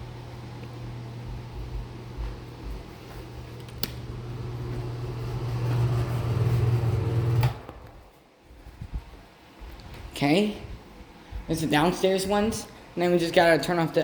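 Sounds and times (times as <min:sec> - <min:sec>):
electric fan motor humming: 0:00.0 - 0:14.0
switch clicking: 0:03.6 - 0:04.0.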